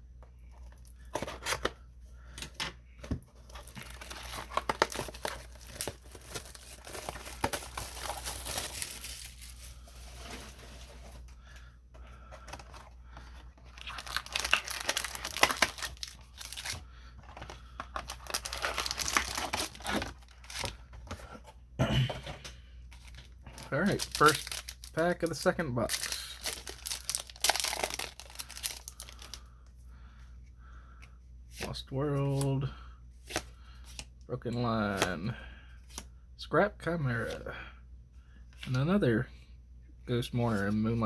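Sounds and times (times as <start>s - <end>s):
foil packs crinkling and tearing: 3.5s - 11.2s, 12.4s - 20.8s, 23.0s - 29.5s.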